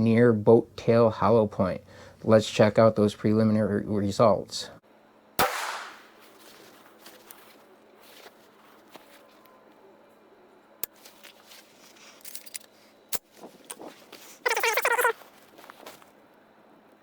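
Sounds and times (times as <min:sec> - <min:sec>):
rifle shot echoing: 0:05.4 - 0:06.2
sharp cracks: 0:05.4 - 0:06.2.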